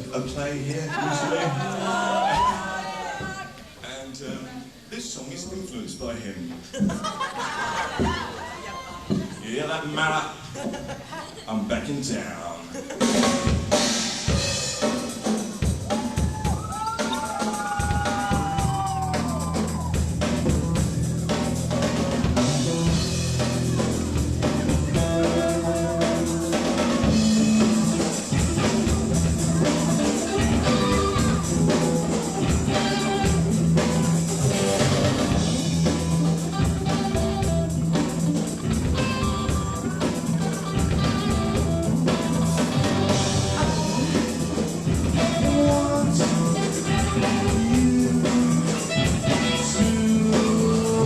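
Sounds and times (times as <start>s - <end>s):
drum kit beat: 6.8s - 9.5s, 12.9s - 51.0s
rock band playing: 12.7s - 51.0s.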